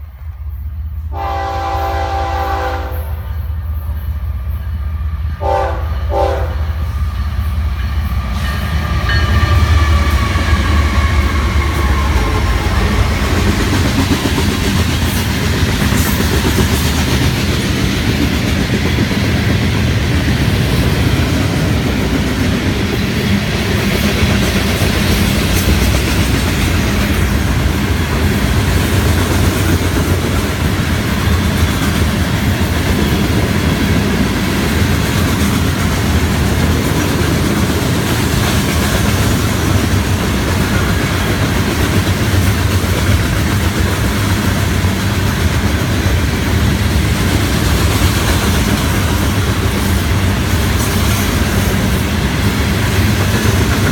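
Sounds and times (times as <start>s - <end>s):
train horn: 1.1s - 3.5s, 5.4s - 6.9s
train wheels clattering on rails: 4.6s - 53.9s
locomotives passing: 6.8s - 53.9s.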